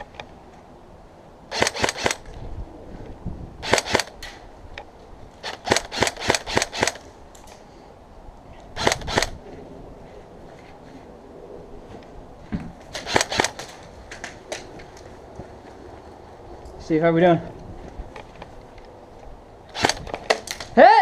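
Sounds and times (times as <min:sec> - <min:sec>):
airsoft guns firing bursts: 0:01.5 - 0:02.2, 0:03.6 - 0:04.1, 0:05.4 - 0:07.0, 0:13.0 - 0:13.7, 0:19.7 - 0:20.4.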